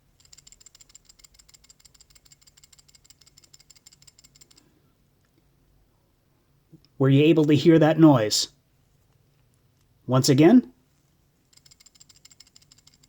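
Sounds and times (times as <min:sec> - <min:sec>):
pulley bearings chattering: 0:00.1 - 0:04.6, 0:11.4 - 0:13.0.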